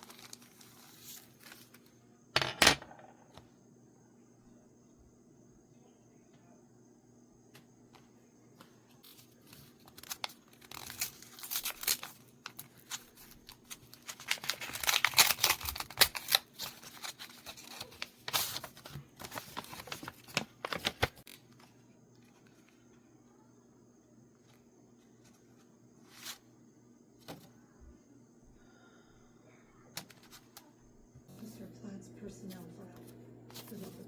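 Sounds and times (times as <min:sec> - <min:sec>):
packaging being torn and crinkled: 0:00.0 - 0:01.8, 0:09.8 - 0:21.5.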